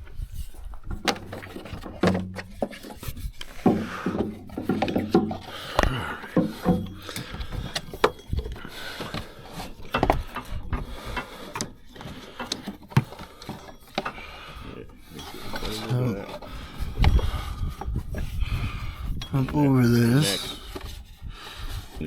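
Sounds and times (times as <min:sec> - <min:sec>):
tools and parts clicking: 0:00.9 - 0:17.1.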